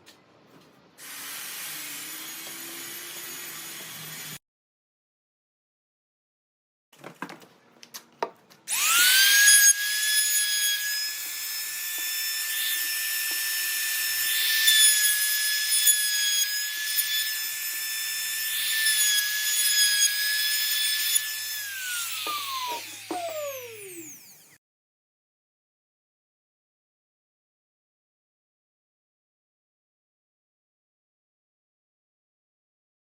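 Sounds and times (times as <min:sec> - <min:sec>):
power tool cutting wood: 0:01.0 - 0:04.4, 0:08.7 - 0:24.6.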